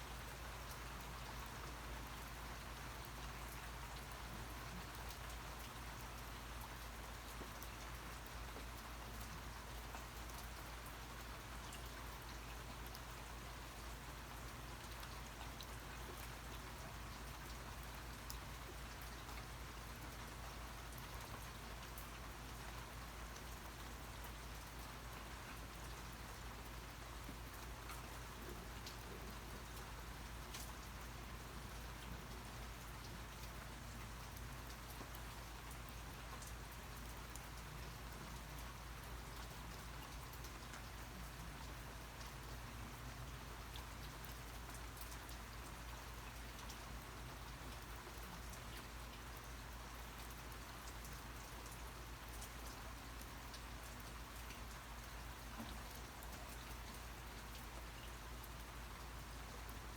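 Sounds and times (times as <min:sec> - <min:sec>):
steady rain: 0:00.0 - 0:59.9
raindrop ticks: 0:14.3 - 0:59.8.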